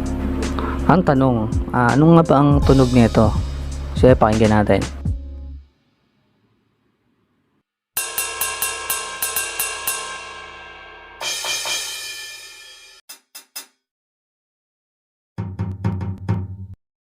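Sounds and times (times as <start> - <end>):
kick and drum hits: 2.6 - 4.1, 15.4 - 16.7
crash cymbal ringing: 8.0 - 13.0
cymbal strikes: 8.0 - 13.7.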